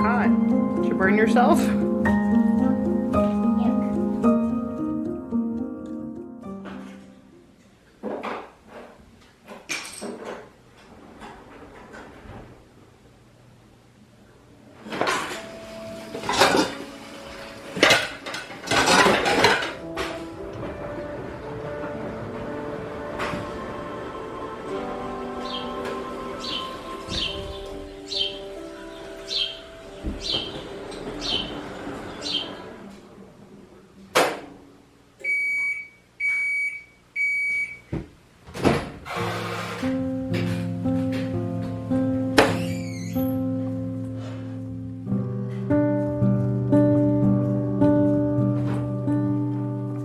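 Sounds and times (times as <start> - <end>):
dishes and cutlery clattering: 17.7 - 20.3
bird chirps: 26.4 - 32.7
appliance beeps: 35.2 - 37.9.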